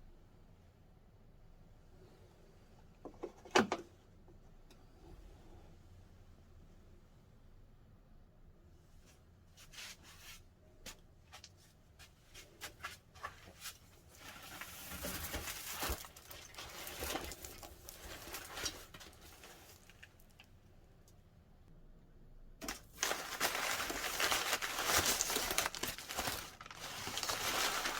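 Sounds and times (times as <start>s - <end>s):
rustling: 11.3s - 20.5s, 22.6s - 27.9s.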